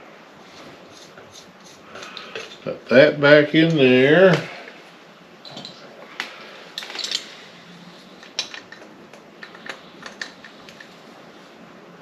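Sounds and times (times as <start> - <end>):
small metal parts clicking: 6.7 - 7.4, 8.2 - 10.9.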